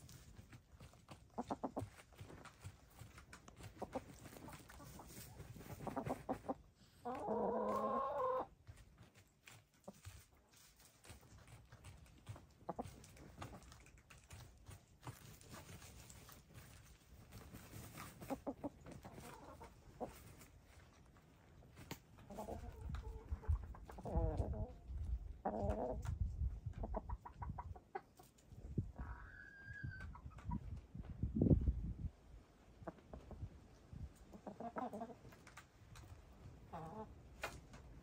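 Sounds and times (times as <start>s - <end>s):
scratching in dirt: 0.0s - 27.3s
hens clucking softly: 0.0s - 31.2s, 32.7s - 37.8s.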